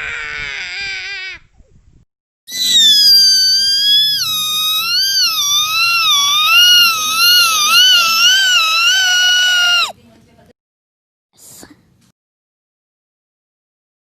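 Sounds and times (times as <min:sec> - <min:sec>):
high-pitched shrill cry: 0:02.5 - 0:09.9.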